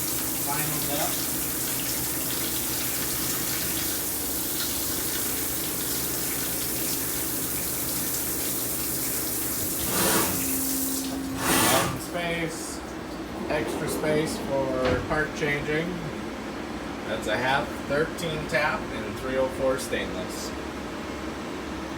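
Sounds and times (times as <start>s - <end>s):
coolant splashing: 0.0s - 16.0s
loud coolant rush: 0.0s - 16.3s
low machine hum: 0.0s - 21.9s.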